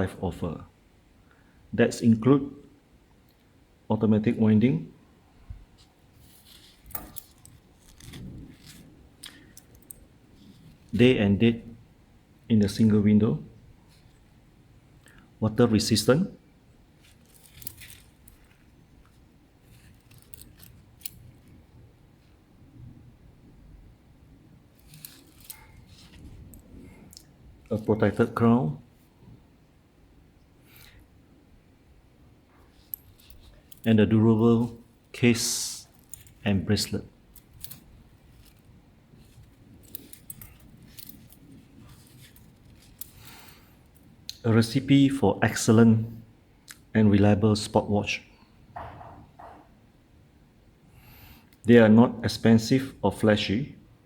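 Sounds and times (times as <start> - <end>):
clicks and rustles of packaging: 6.2 - 11.0, 17.0 - 21.6, 24.8 - 28.2, 35.8 - 36.5, 37.4 - 44.1.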